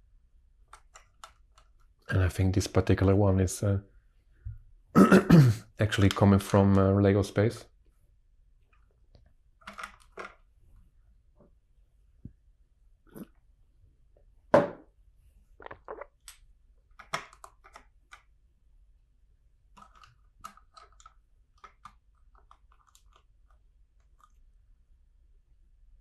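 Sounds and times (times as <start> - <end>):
plastic bricks clicking together: 9.6 - 10.4, 16.2 - 18.3, 19.8 - 23.4.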